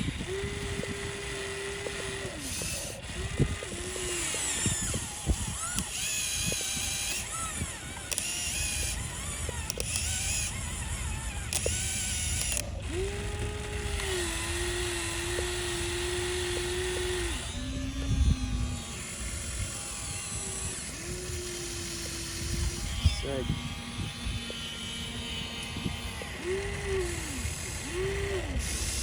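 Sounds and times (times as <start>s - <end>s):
small electric motors whining: 0.0s - 29.0s.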